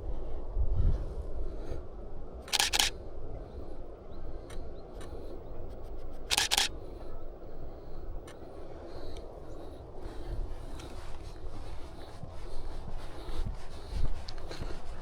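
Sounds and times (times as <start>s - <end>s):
camera shutter double click: 2.5s - 2.9s, 6.3s - 6.7s.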